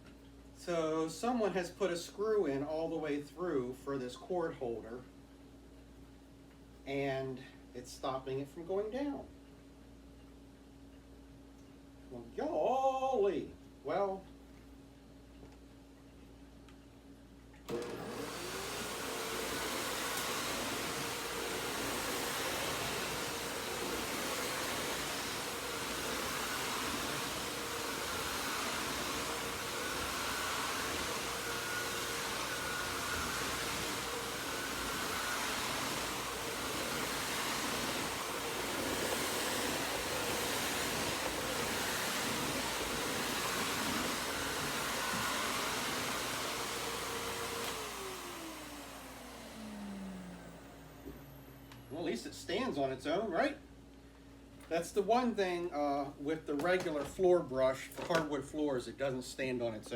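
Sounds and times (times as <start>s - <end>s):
vacuum cleaner running: 17.6s - 53.5s
vacuum motor spinning down: 17.7s - 52.3s.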